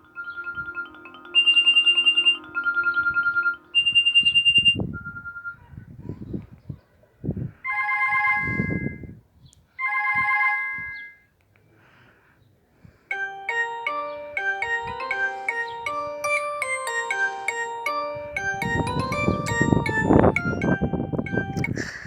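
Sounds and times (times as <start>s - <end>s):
bell-like ringtone melody: 0.0s - 5.3s, 13.1s - 22.0s
held electronic chimes: 0.0s - 5.3s, 13.1s - 22.0s
beeping electronic ringtone melody: 0.0s - 5.6s, 13.1s - 22.0s.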